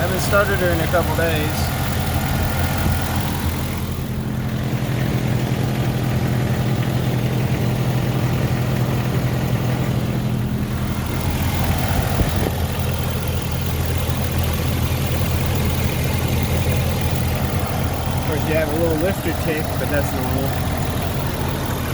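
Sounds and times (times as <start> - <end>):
car engine idling: 0.0 - 21.9
engine lifter tick: 0.0 - 21.9.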